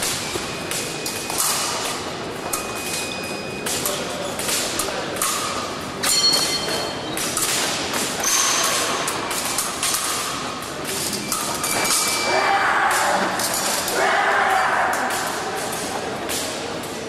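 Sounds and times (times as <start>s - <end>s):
reverberant hall noise: 0.0s - 17.0s
steel blades clashing: 3.8s - 16.6s.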